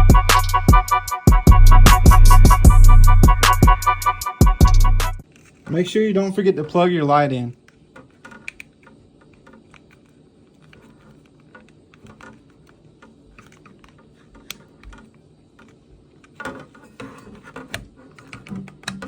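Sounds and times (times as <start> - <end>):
small plastic and metal parts clicking: 5.2 - 5.7, 7.5 - 19.0.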